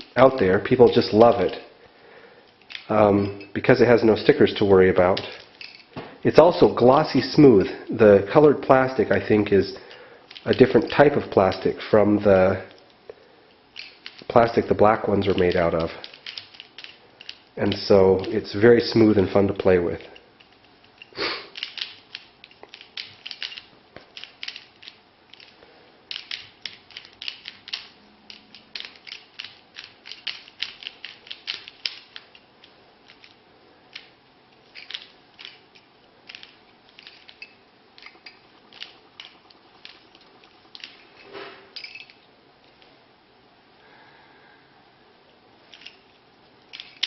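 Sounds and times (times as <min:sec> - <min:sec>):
puzzle cube clicking: 0:13.8 - 0:18.5, 0:20.4 - 0:41.1.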